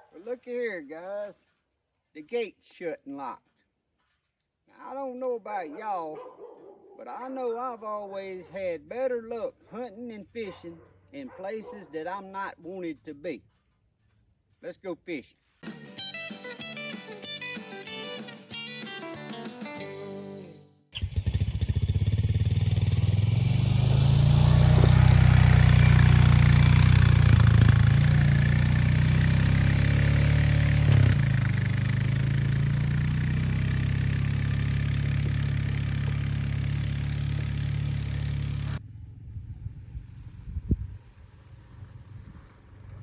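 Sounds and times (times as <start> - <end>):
vehicle engine accelerating: 21.0 - 43.0.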